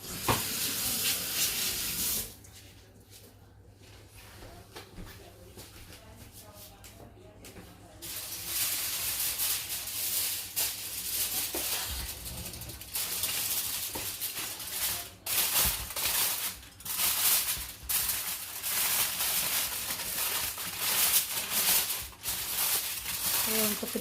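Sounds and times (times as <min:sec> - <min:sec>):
plastic wrap rustling: 0:00.1 - 0:02.4, 0:07.9 - 0:24.0.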